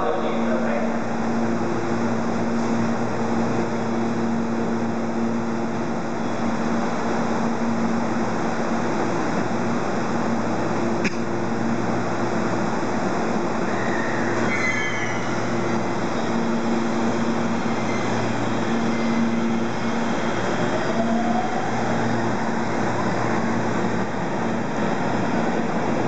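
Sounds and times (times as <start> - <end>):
train wheel and running noise: 0.0 - 26.0
brief high squeal: 13.7 - 15.4.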